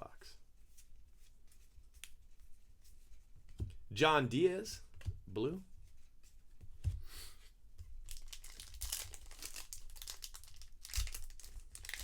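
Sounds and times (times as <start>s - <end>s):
wrappers crinkling and tearing: 8.0s - 12.0s.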